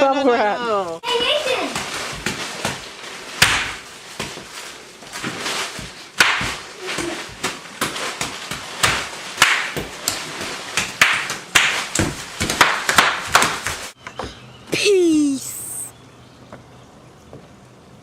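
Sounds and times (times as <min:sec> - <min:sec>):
crackling bursts: 0:01.1 - 0:14.0
sharp snaps and knocks: 0:01.7 - 0:14.3.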